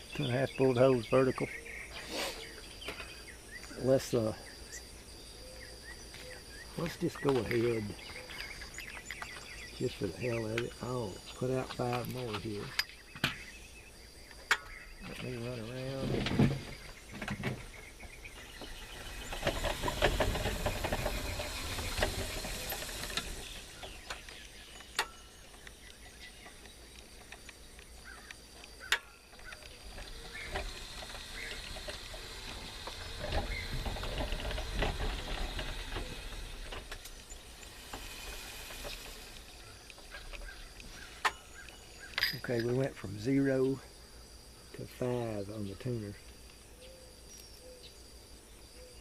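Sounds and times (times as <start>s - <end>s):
small ticks: 18.3s - 42.8s
sharp clicks: 18.4s - 42.9s.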